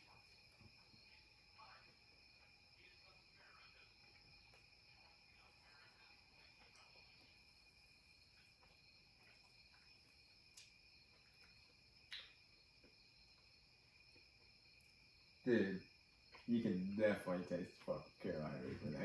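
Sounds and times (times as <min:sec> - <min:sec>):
faint high-pitched whine: 0:00.0 - 0:19.0
faint small ticks: 0:08.2 - 0:15.1.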